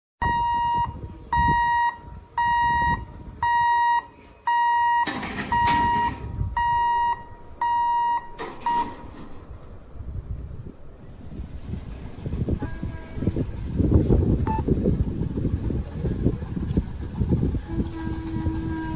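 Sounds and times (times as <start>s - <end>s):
electronic warning beeps: 0.2s - 8.9s, 14.4s - 14.6s.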